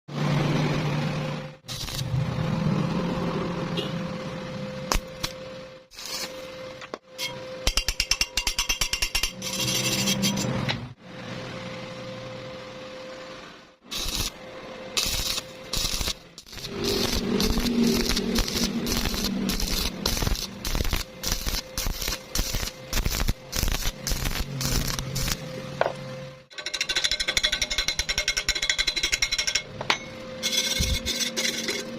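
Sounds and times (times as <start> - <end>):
steady hum: 0.8 - 31.9
welding arc crackling: 1.6 - 2.9, 4.9 - 6.9, 13.9 - 14.4, 15.0 - 25.7.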